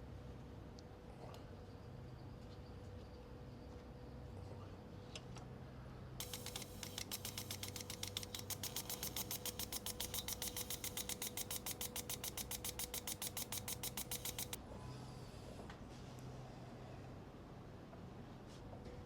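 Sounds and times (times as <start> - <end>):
fuel injector fast clicking: 6.2 - 14.6
steady electric hum: 6.2 - 14.6.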